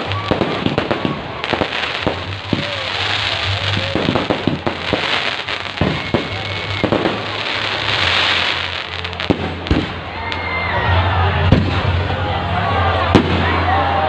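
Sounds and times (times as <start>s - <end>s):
fireworks bangs: 0.0s - 10.2s
fireworks crackling: 0.0s - 10.4s.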